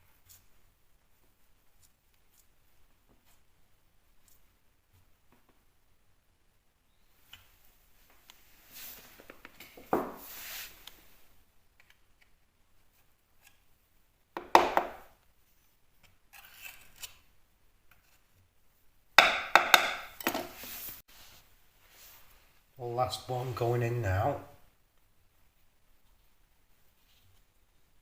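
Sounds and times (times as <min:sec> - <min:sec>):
hand tools scraping plasterboard: 0:16.3 - 0:17.2.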